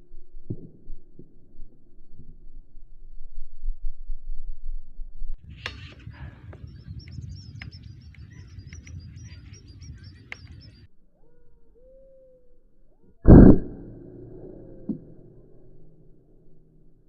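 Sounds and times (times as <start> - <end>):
low rumble: 0.0 - 17.0
soft low whistled notes: 0.0 - 17.0.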